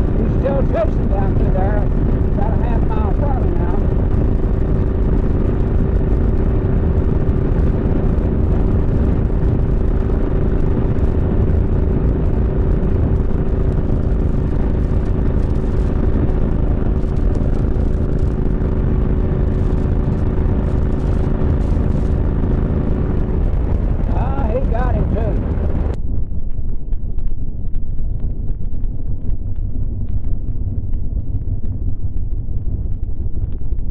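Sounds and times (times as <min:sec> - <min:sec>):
vehicle engine and road noise: 0:00.0 - 0:33.9.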